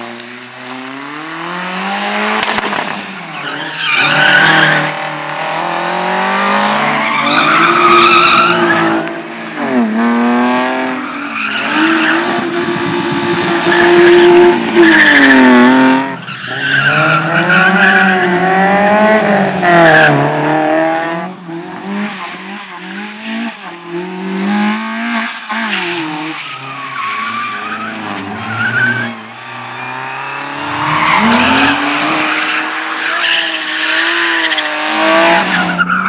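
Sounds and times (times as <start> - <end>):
rally car engine revving: 0.0 - 36.0
tyres squealing and skidding: 2.5 - 5.2, 6.4 - 9.9, 10.8 - 18.8, 22.4 - 36.0.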